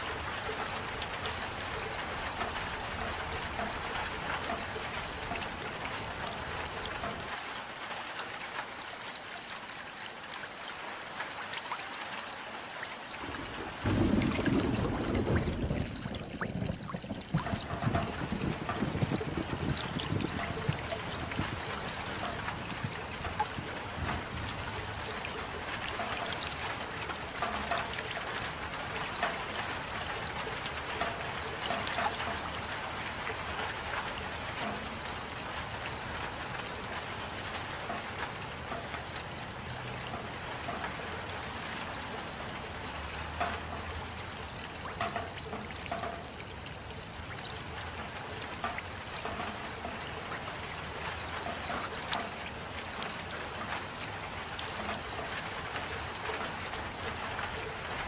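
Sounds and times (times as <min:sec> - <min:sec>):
steady rain: 0:00.0 - 0:58.0
trickling water: 0:00.0 - 0:58.0
close drips: 0:13.1 - 0:58.0.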